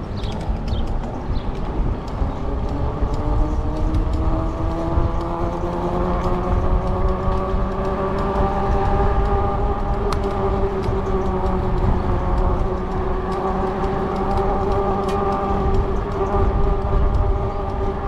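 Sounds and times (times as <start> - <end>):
wind rumble: 0.0 - 18.0
electric bike motor whine: 2.4 - 18.0.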